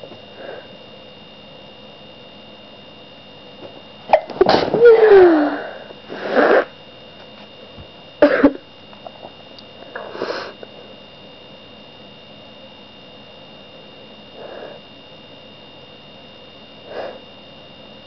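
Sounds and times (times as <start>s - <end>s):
breathy exhale: 0.4s - 0.7s, 14.4s - 14.9s, 16.9s - 17.3s
person sneezing: 4.1s - 6.7s, 8.2s - 8.6s.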